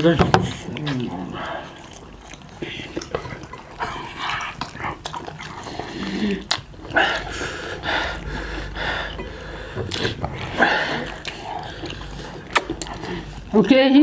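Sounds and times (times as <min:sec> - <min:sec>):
people huffing and gasping: 0:05.6 - 0:13.6.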